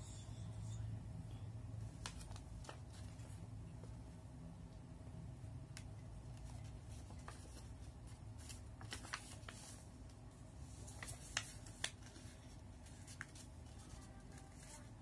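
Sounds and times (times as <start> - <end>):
low steady hum: 0.0 - 15.0
paper rustling and creasing: 2.0 - 3.4, 6.4 - 10.1, 10.7 - 15.0.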